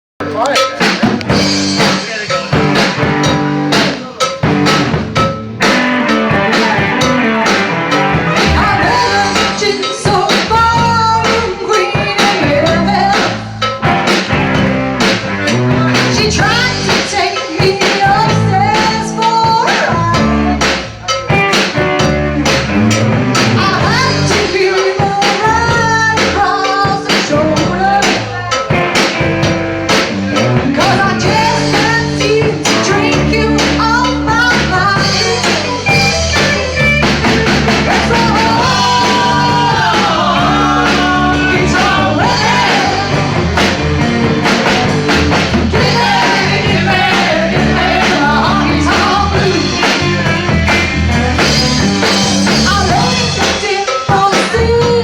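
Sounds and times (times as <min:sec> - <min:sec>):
electric guitar riff: 0:00.2 - 0:17.0, 0:34.7 - 0:53.6
drum kit beat: 0:00.2 - 0:55.0.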